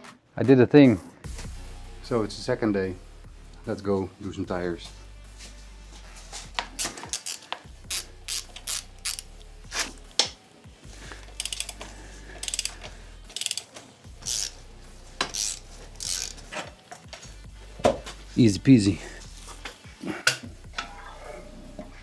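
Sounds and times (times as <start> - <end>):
ratchet wrench clicking: 6.6 - 9.9, 11.1 - 16.6.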